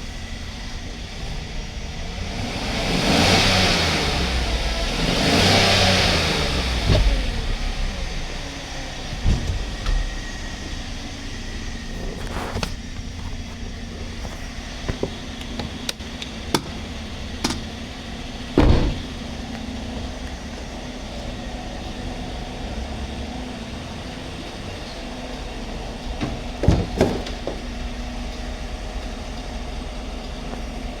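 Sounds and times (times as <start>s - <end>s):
engine idling: 0.0s - 31.0s
sharp clicks and knocks: 14.9s - 16.8s, 17.4s - 17.7s.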